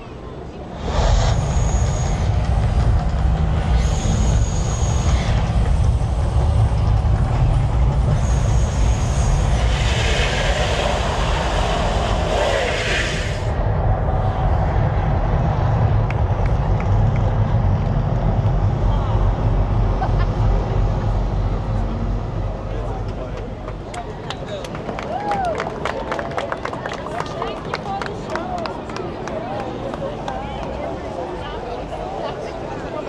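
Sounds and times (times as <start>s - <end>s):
deep steady rumble: 0.5s - 25.1s
loud hissing rush: 0.6s - 14.7s, 18.6s - 24.2s.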